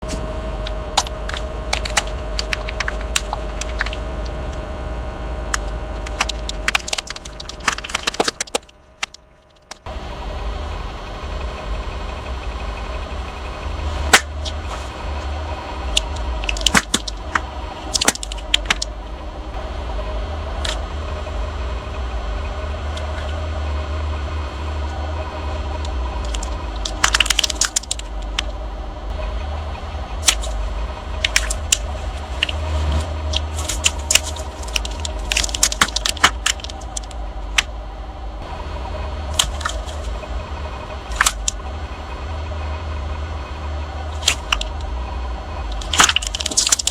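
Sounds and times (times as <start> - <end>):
car engine and tyre rumble: 0.0 - 46.9
objects cracking and popping: 0.6 - 4.3, 5.5 - 9.9, 14.1 - 14.6, 15.9 - 18.9, 25.8 - 28.5, 30.2 - 30.6, 31.2 - 37.7, 39.3 - 40.1, 41.1 - 41.6, 44.2 - 44.8, 45.7 - 46.9.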